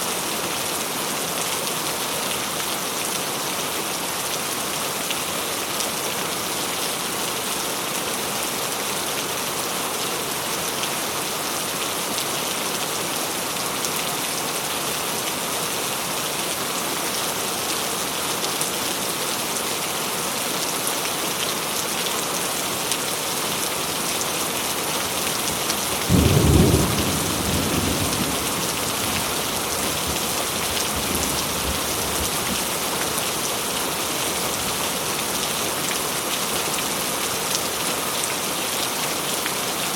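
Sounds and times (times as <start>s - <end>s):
steady rainfall: 0.0s - 39.9s
thunder clap rumbling: 26.1s - 30.1s.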